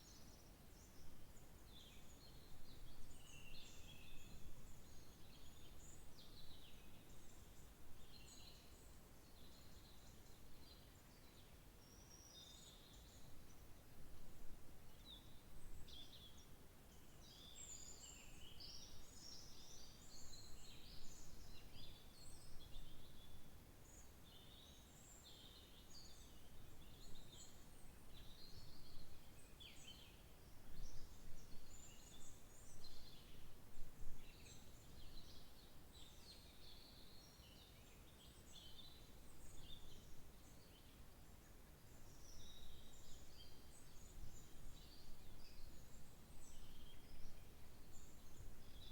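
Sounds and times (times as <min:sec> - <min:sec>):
small birds chirping: 0:41.6 - 0:48.9.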